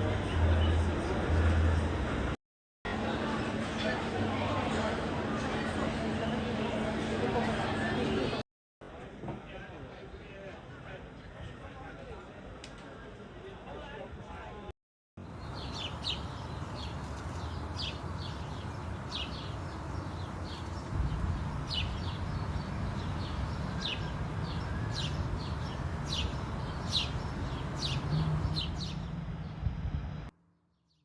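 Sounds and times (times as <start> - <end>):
low outdoor rumble: 0.0 - 8.4, 16.9 - 30.3
small birds chirping: 15.2 - 28.0.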